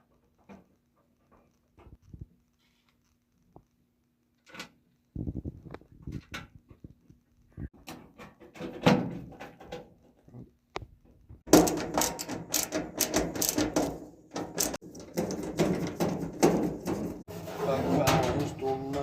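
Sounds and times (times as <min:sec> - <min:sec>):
clattering and rattling: 0:07.6 - 0:10.3, 0:11.4 - 0:19.0.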